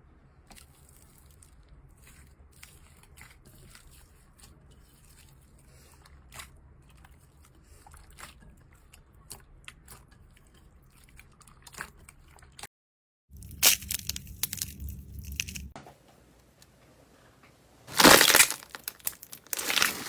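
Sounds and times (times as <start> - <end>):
slime squeezed by hand: 17.9 - 20.0.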